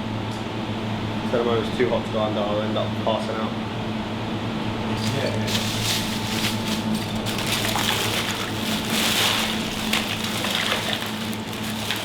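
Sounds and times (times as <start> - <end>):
liquid splashing in bathtub: 5.5 - 12.0.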